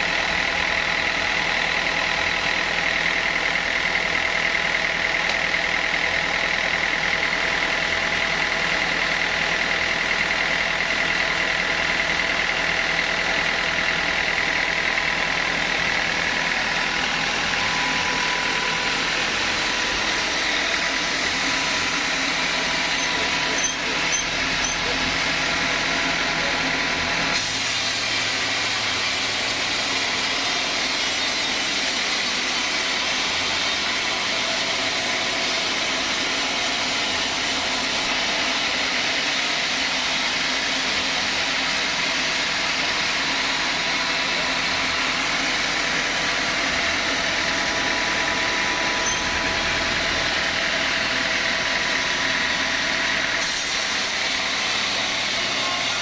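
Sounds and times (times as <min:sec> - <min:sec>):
sawmill saw running: 0:00.0 - 0:56.0.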